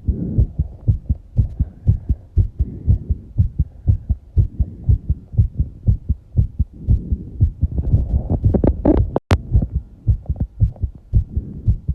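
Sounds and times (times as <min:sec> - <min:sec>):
heavy breathing: 0:00.0 - 0:05.8, 0:06.6 - 0:08.3, 0:11.1 - 0:11.9
fast heartbeat thumping: 0:00.0 - 0:11.9.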